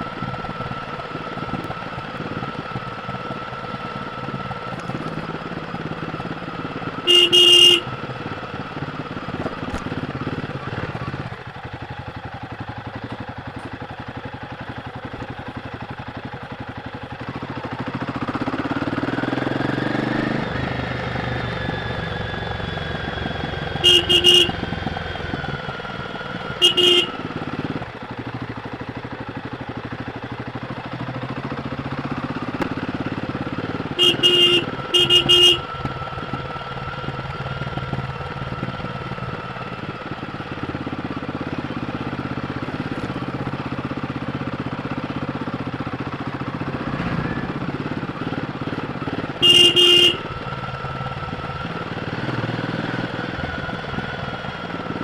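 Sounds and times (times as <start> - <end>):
motorcycle engine running: 0.0 - 55.0
short horn beeps: 6.9 - 8.0, 23.8 - 24.7, 26.6 - 27.5, 33.6 - 35.8, 48.7 - 50.4.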